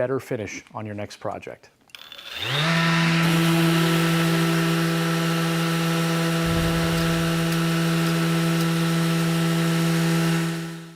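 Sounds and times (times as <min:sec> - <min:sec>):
power tool motor humming: 0:02.0 - 0:10.9
brief low rumble: 0:06.4 - 0:07.7.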